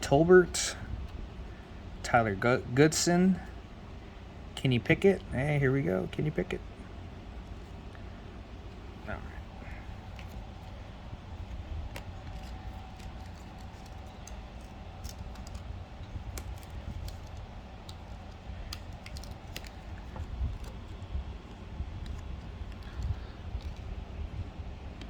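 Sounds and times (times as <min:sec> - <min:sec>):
steady low rumble: 0:00.0 - 0:25.0
trading cards clicking and snapping: 0:09.5 - 0:25.0.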